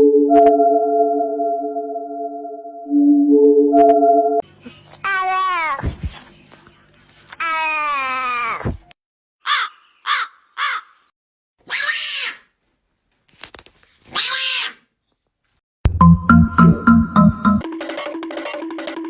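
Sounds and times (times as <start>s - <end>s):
music with a beat: 15.9s - 19.0s.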